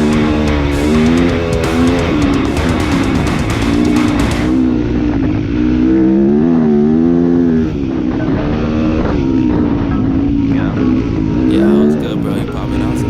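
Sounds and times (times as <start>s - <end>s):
guitar strumming: 0.0s - 5.1s, 11.4s - 13.0s
dirt bike engine revving: 0.0s - 12.2s.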